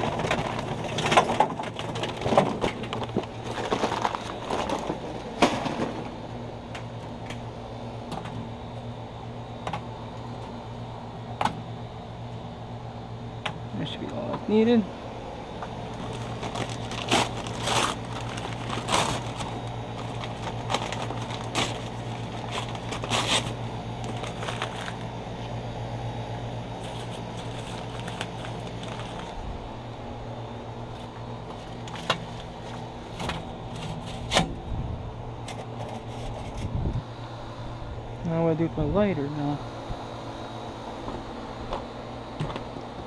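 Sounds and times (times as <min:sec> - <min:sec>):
paper bag crinkling: 0:00.0 - 0:06.0, 0:15.8 - 0:25.2, 0:26.8 - 0:29.6, 0:30.9 - 0:34.4
steady low hum: 0:00.0 - 0:43.0.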